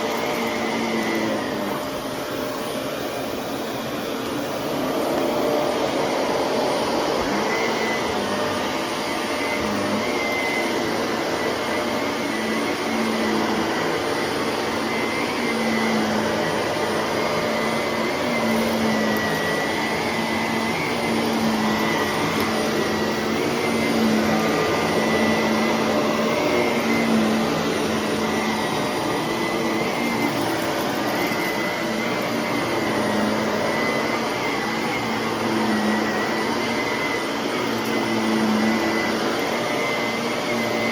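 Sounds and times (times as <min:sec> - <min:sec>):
vacuum cleaner motor whine: 0:00.0 - 0:40.9.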